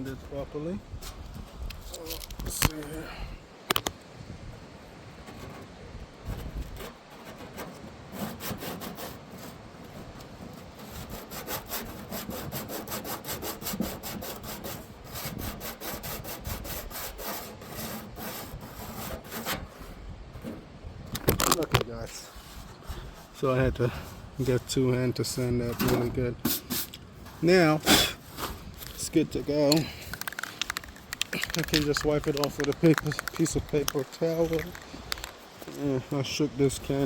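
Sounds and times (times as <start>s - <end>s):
sanding metal strokes: 6.8s - 20.0s.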